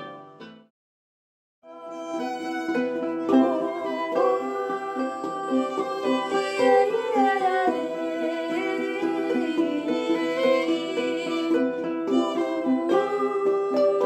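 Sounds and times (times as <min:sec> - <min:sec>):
violin melody with sliding notes: 0:01.7 - 0:14.0.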